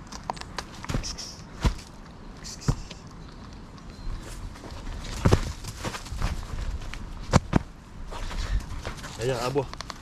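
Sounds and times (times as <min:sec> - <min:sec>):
thudding footsteps on ground: 0:00.5 - 0:02.0, 0:04.2 - 0:09.4.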